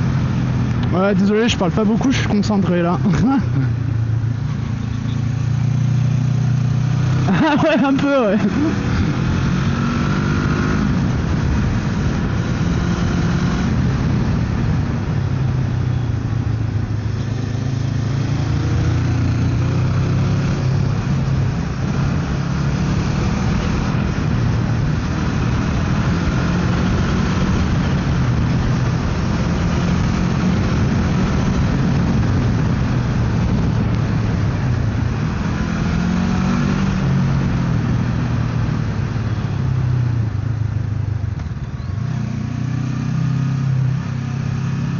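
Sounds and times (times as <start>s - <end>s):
motorcycle engine cruising: 0.0s - 44.9s
wind noise: 6.7s - 44.0s.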